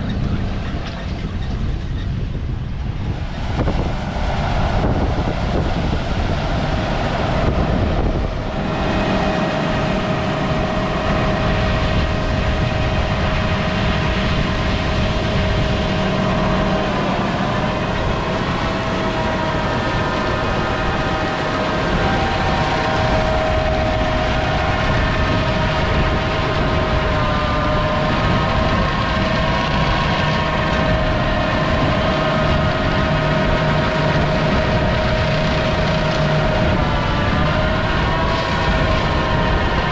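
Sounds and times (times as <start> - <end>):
diesel machinery rumbling: 0.0 - 39.9
high wavering whine of drives: 0.0 - 39.9.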